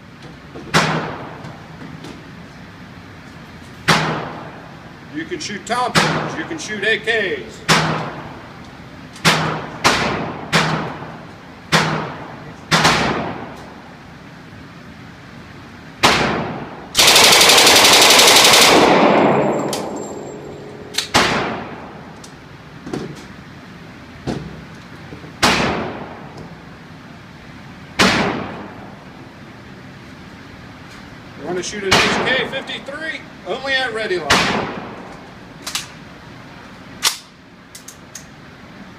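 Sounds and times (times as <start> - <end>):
machine-gun burst: 17.0 - 20.0
single gunshots echoing: 21.1 - 22.0.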